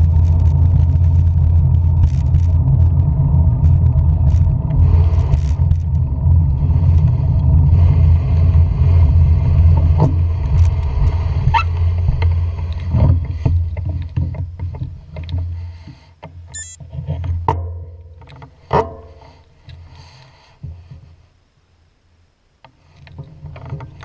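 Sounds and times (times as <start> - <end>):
low engine rumble: 0.0 - 15.1.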